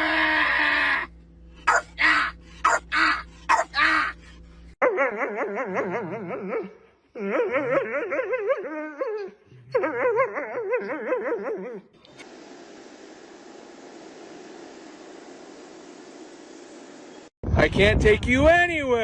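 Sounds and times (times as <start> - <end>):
dog howling: 1.7 - 12.0.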